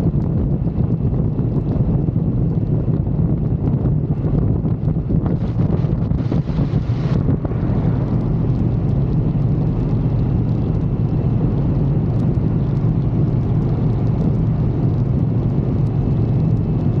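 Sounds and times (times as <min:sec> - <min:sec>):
motorcycle engine drone: 0:00.0 - 0:17.0
wind rush over microphone: 0:00.0 - 0:17.0.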